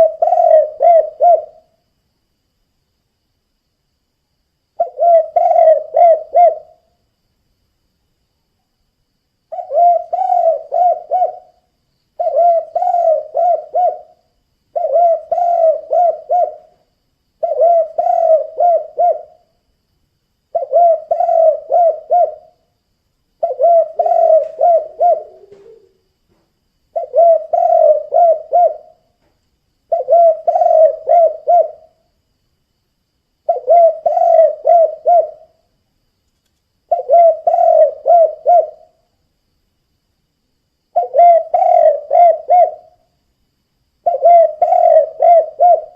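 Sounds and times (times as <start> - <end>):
dove cooing: 0.0 - 1.8, 4.8 - 6.9, 9.5 - 19.5, 20.5 - 22.6, 23.4 - 26.0, 26.9 - 29.1, 29.9 - 32.0, 33.5 - 35.6, 36.9 - 39.0, 41.0 - 43.0, 44.0 - 45.9.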